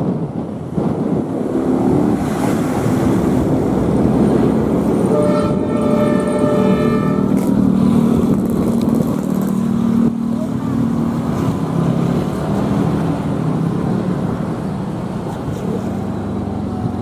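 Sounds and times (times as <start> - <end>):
machine horn: 5.1 - 7.4.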